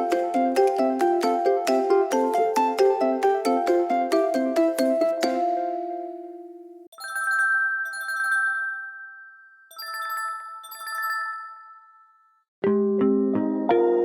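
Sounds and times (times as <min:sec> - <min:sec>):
bell-like electronic chime: 0:07.0 - 0:12.4.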